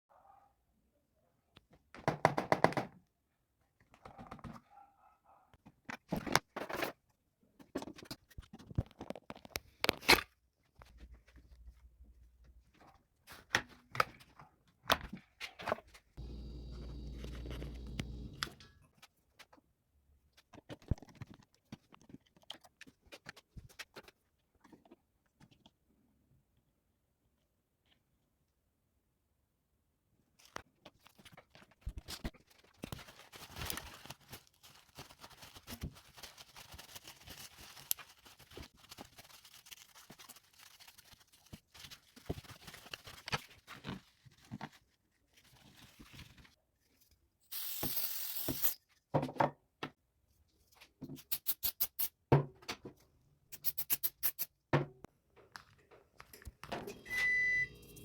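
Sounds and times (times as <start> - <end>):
electronic beep: 56.9 - 58.0.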